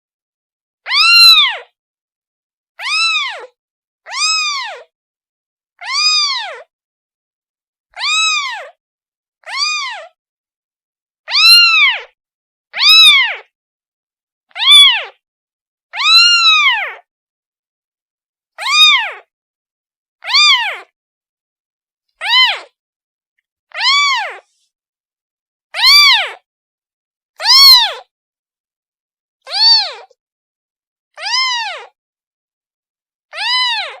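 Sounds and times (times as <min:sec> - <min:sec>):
kitten meowing: 0:00.9 - 0:01.7, 0:02.8 - 0:04.9, 0:05.8 - 0:06.7, 0:08.0 - 0:08.8, 0:09.4 - 0:10.2, 0:11.3 - 0:12.2, 0:12.8 - 0:13.5, 0:14.6 - 0:15.2, 0:16.0 - 0:17.0, 0:18.6 - 0:19.3, 0:20.2 - 0:20.9, 0:22.2 - 0:22.8, 0:23.7 - 0:24.5, 0:25.8 - 0:26.4, 0:27.4 - 0:28.1, 0:29.5 - 0:30.2, 0:31.2 - 0:32.0, 0:33.3 - 0:34.0.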